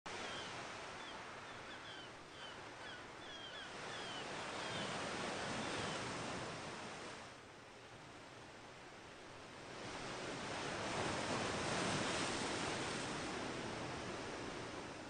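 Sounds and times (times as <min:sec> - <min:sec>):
sea waves breaking: 0:00.1 - 0:07.4, 0:09.6 - 0:15.0.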